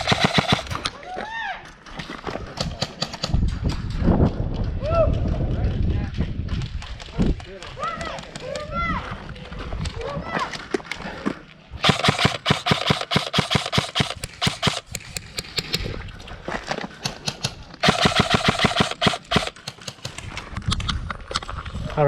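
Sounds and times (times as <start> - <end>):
airsoft gun single shots: 0.0 - 0.9, 11.8 - 15.0, 17.8 - 19.6
airsoft guns rapid fire: 0.0 - 0.9, 11.8 - 15.6, 17.1 - 20.4.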